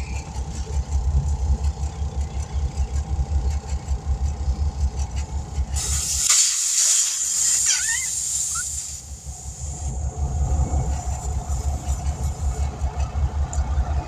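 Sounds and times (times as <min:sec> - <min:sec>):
vehicle engine rumbling: 0:00.0 - 0:14.0
high hiss: 0:05.8 - 0:09.9.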